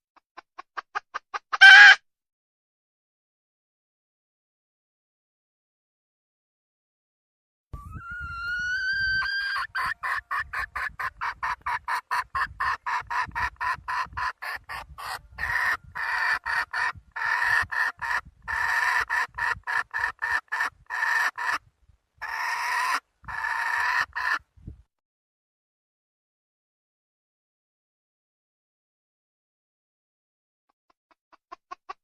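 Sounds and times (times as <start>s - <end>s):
hen clucking and squawking: 0.6s - 2.0s, 7.8s - 21.6s, 22.2s - 24.4s.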